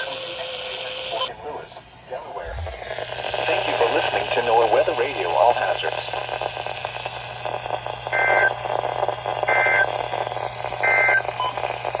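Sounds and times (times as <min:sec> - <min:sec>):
radio receiver hiss and hum: 0:00.0 - 0:12.0
warbling data tone bursts: 0:02.8 - 0:12.0.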